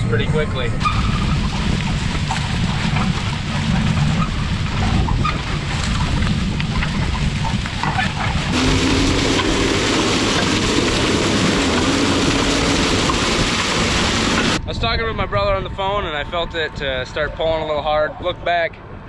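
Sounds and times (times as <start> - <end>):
tractor engine running: 8.5 - 14.6.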